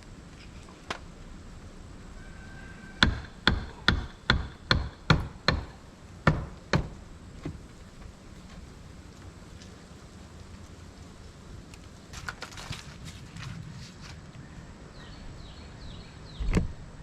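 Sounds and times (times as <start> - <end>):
hammer striking: 3.0 - 7.0.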